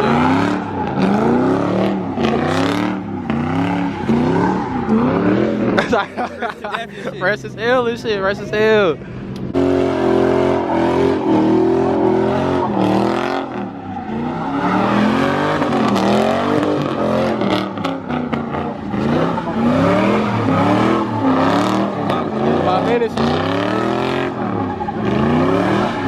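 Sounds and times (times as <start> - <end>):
car engine revving: 0.0 - 26.0.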